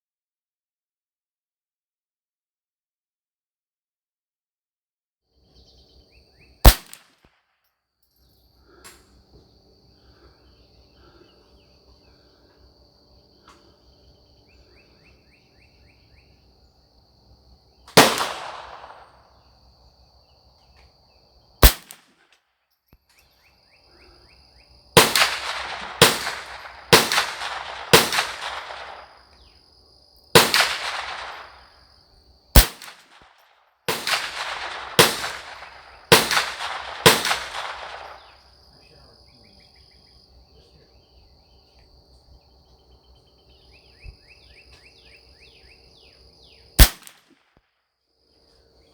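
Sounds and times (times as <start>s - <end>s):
rifle shots: 6.6s - 7.2s, 17.9s - 19.4s, 21.6s - 22.2s, 25.0s - 29.4s, 30.4s - 31.8s, 32.5s - 38.5s, 46.8s - 47.4s
high insect drone: 8.1s - 21.6s, 23.2s - 32.6s, 33.9s - 46.8s.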